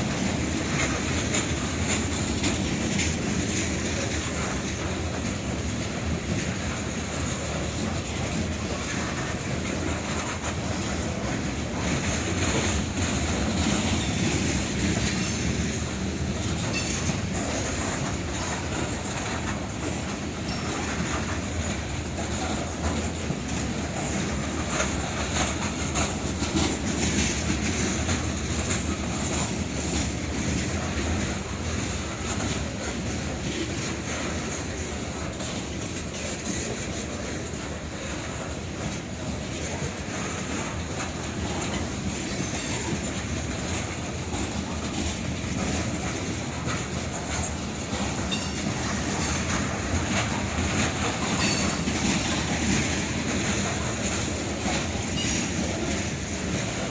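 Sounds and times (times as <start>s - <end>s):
freight train wheels clattering: 0.0s - 56.9s.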